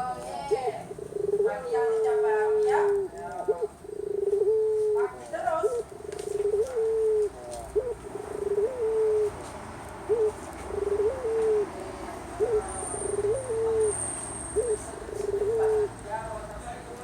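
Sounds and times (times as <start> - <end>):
dove cooing: 0.0 - 16.0.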